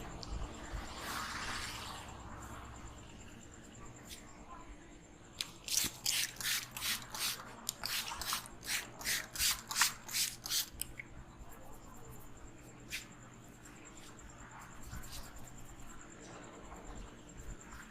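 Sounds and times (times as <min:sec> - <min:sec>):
rubbing strokes on hair: 0:11.6 - 0:15.9.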